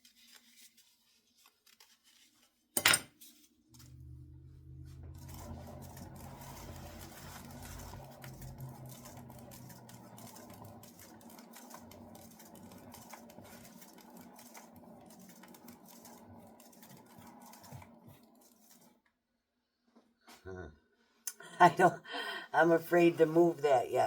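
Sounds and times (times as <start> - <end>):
small motor humming: 3.8 - 17.9.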